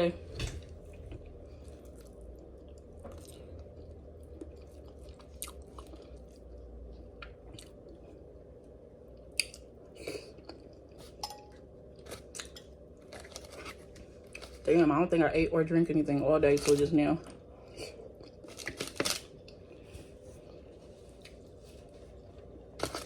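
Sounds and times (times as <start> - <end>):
person chewing crab: 1.2 - 8.4, 9.2 - 11.2, 17.6 - 19.8.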